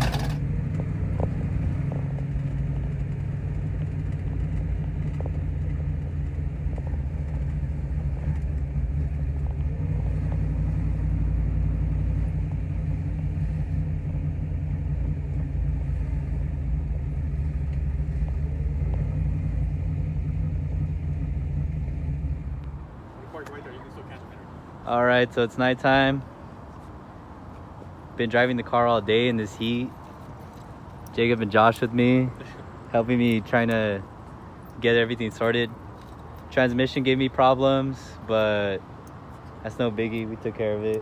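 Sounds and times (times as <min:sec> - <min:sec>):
car engine running: 0:00.0 - 0:22.8.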